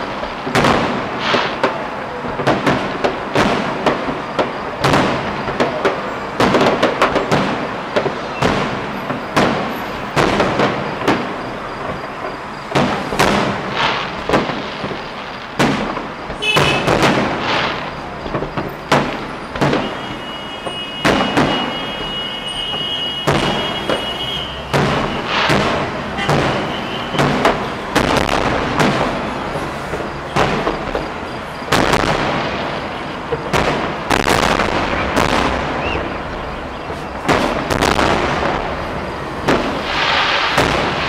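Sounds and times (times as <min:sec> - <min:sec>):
firework crackle: 0:00.0 - 0:41.0
fireworks shells bursting: 0:00.0 - 0:41.0
steady high whistle: 0:19.8 - 0:25.4.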